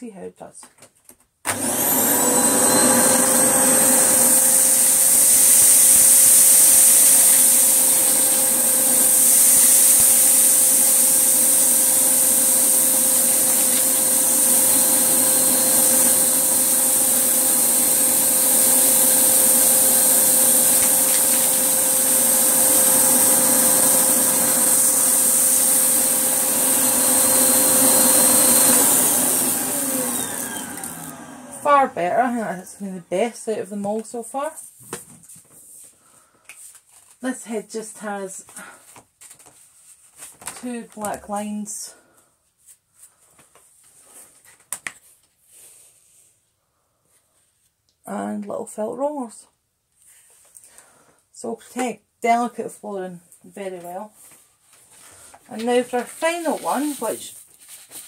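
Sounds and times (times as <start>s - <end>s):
vacuum sucking up rice: 1.5s - 32.4s
vacuum cleaner motor whine: 1.5s - 32.8s.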